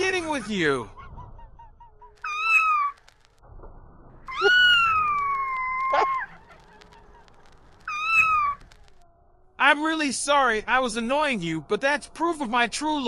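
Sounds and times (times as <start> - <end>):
cat meowing: 2.3 - 3.0, 4.3 - 6.3, 7.9 - 8.6.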